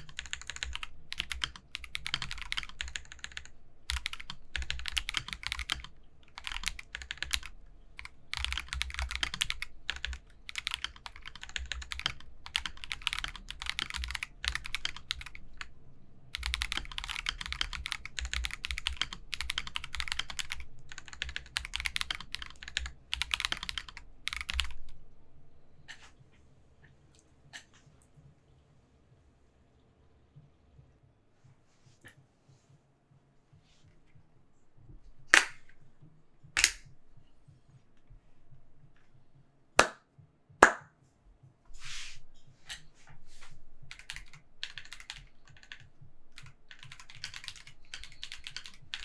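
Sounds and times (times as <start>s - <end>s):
mechanical keyboard typing: 0.0s - 15.7s, 16.3s - 25.0s, 43.9s - 49.0s.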